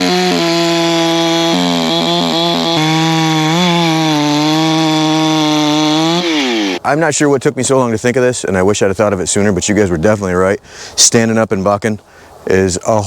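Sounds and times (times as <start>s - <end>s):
chainsaw at full throttle: 0.0s - 6.8s.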